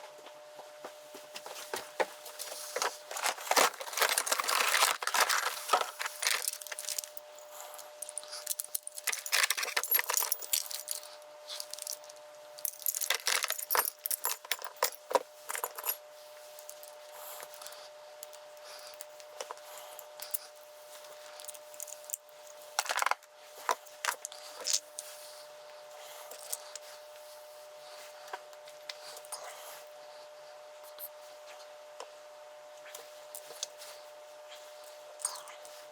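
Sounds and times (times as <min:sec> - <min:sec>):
faint steady hum: 0:00.0 - 0:35.9
keys and metal lock parts clinking: 0:03.1 - 0:16.0.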